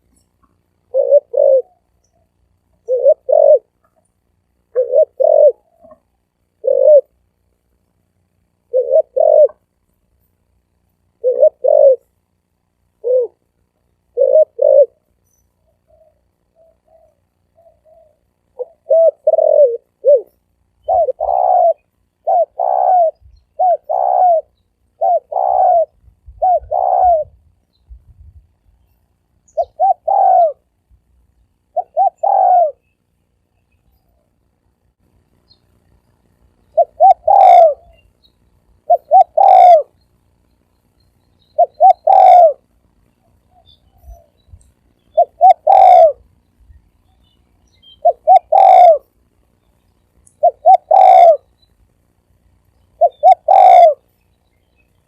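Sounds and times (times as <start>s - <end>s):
dove cooing: 0.0s - 4.0s, 4.6s - 7.2s, 8.6s - 9.7s, 11.1s - 12.2s, 12.9s - 27.6s, 29.4s - 30.8s, 31.7s - 32.8s, 36.6s - 38.1s, 38.8s - 40.0s, 41.6s - 44.5s, 45.1s - 46.3s, 47.9s - 49.1s, 50.4s - 51.5s, 53.0s - 54.1s.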